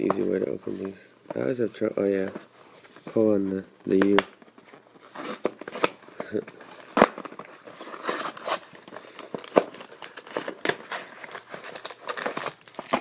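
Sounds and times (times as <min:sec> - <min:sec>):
packaging crinkling and tearing: 0:04.0 - 0:13.0.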